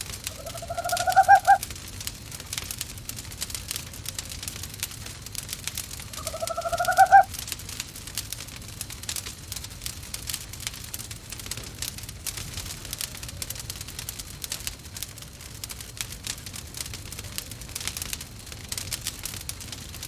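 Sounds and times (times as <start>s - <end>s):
fireplace crackling: 0.0s - 20.0s
owl hooting: 0.2s - 1.6s, 6.1s - 7.3s.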